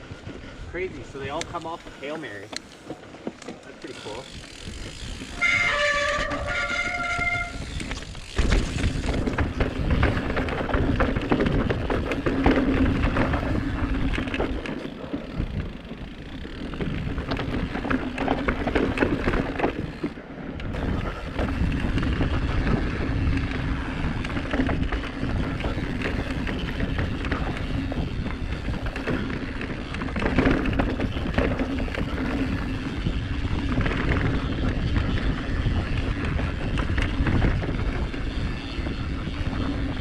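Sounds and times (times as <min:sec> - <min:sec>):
bike tyres rolling over rough ground: 0:00.0 - 0:40.0
bike rattling and knocking: 0:01.0 - 0:40.0
wind on microphone: 0:04.2 - 0:14.6, 0:15.2 - 0:40.0
high-pitched squeal: 0:05.3 - 0:08.2.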